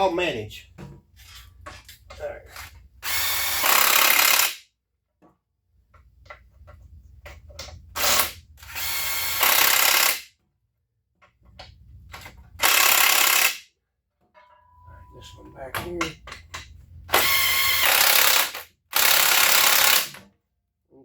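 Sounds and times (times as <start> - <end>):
power tool driving bolts: 2.5 - 4.6, 7.6 - 10.3, 12.1 - 13.6, 17.1 - 20.3.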